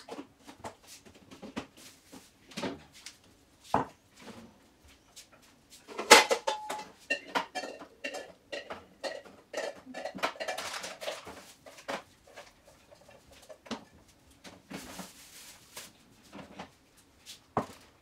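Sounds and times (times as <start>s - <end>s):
dishes knocking and clinking: 5.9s - 13.9s.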